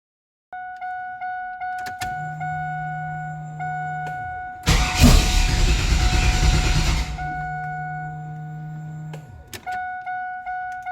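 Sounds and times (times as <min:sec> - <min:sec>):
dashboard warning chimes: 0:02.0 - 0:10.4
steady low hum: 0:02.2 - 0:09.5
engine cranking without starting: 0:04.6 - 0:09.2.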